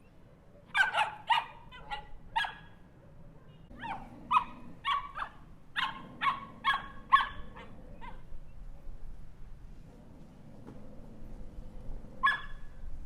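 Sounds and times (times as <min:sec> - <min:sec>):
small dog barking: 0:00.6 - 0:02.8, 0:03.7 - 0:08.3, 0:12.2 - 0:12.7.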